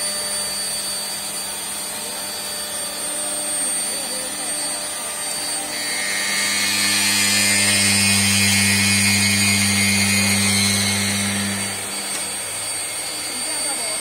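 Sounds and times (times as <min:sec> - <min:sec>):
metal cutting noise: 0:00.0 - 0:14.0
router spindle whine: 0:00.0 - 0:14.0
low hum: 0:02.8 - 0:13.0.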